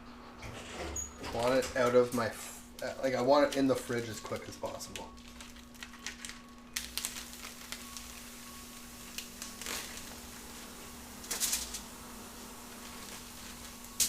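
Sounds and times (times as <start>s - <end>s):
steady hiss: 6.8s - 14.0s.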